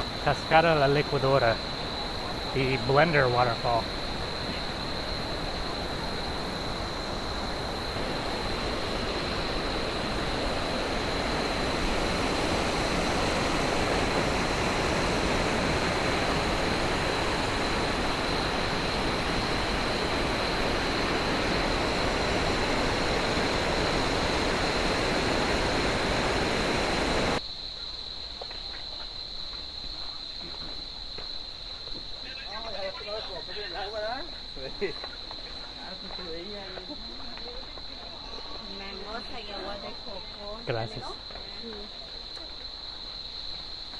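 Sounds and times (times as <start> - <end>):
waterfall rushing: 0.0 - 27.4
high-pitched insect drone: 0.0 - 27.8.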